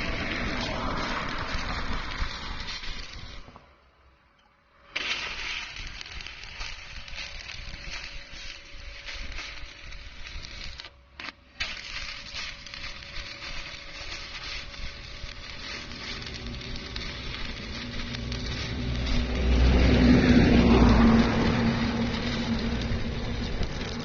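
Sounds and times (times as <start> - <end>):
welding arc crackling: 0.0 - 24.0
low engine-like rumble: 12.3 - 24.0.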